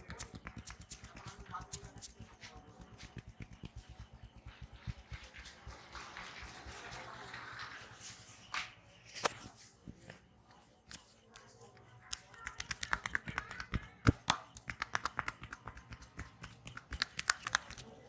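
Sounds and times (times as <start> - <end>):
sharp snaps and clicks of hands: 0.0 - 5.7, 10.9 - 18.0.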